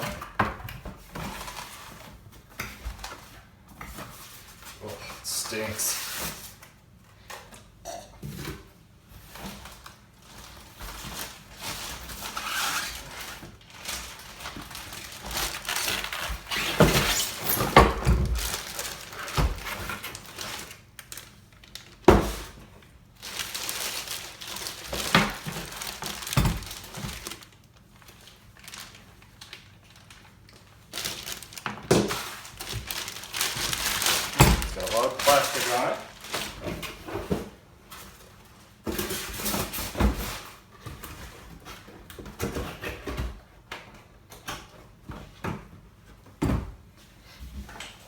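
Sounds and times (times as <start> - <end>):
cardboard and plastic packaging rustling: 0.0 - 7.7, 8.3 - 43.6.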